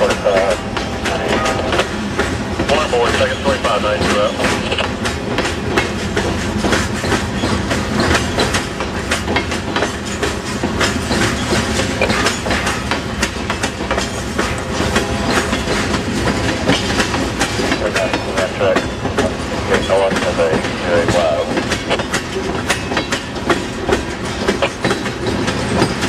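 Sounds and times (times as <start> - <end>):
freight train cars rolling: 0.0 - 26.0
wheels clattering over rail joints: 0.0 - 26.0.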